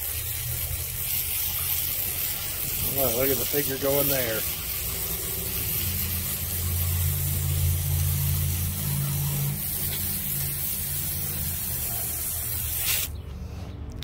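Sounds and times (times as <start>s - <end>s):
saw blade hissing through wood: 0.0s - 13.2s
low motor hum: 0.0s - 14.0s.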